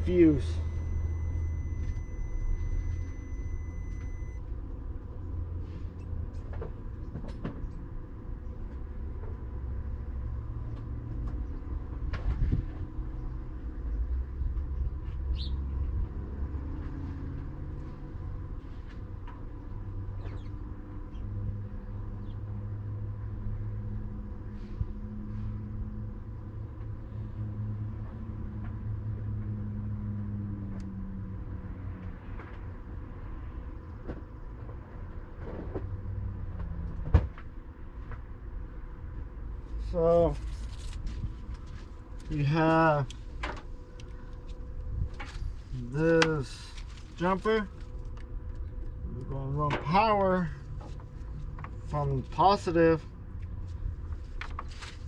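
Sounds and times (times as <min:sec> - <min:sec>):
faint hum: 0:00.0 - 0:11.8
low steady rumble: 0:00.0 - 0:31.7, 0:33.1 - 0:55.0.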